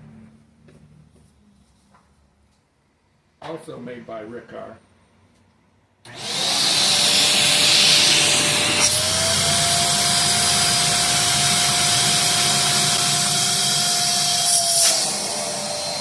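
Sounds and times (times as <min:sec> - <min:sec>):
vacuum cleaner running: 0:06.1 - 0:16.0.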